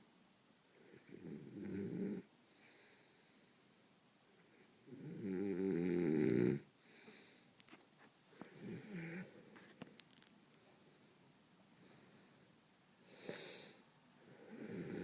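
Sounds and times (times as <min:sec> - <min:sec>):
man snoring: 0:00.9 - 0:02.3, 0:04.9 - 0:06.7, 0:08.5 - 0:09.4, 0:13.1 - 0:15.0.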